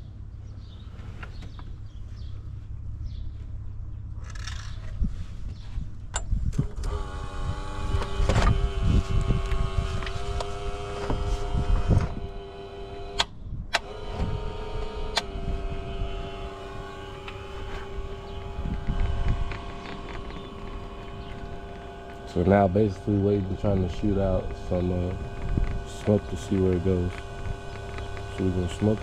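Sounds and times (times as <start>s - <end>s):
electric air pump whining: 6.5s - 29.0s.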